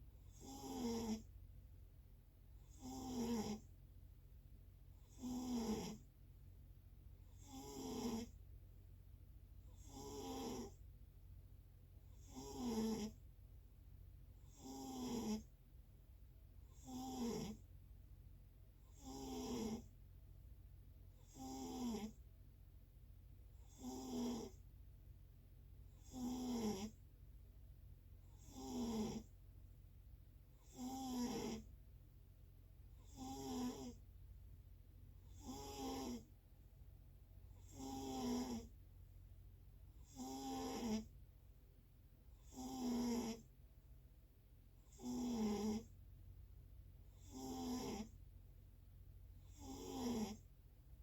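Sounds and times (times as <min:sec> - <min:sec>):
faint low hum: 0:00.0 - 0:51.0
person snoring: 0:28.4 - 0:29.3, 0:33.0 - 0:34.0, 0:37.7 - 0:38.7, 0:40.1 - 0:41.1.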